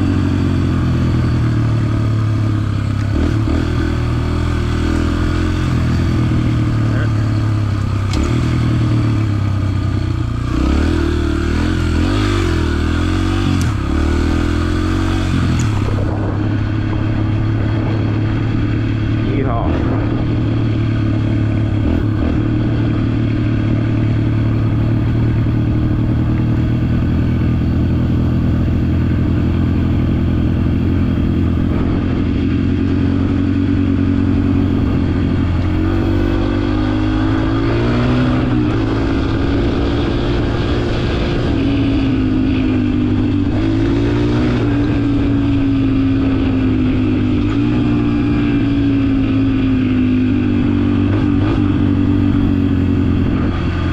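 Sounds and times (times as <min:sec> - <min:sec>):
motorbike engine revving: 0:00.0 - 0:53.9.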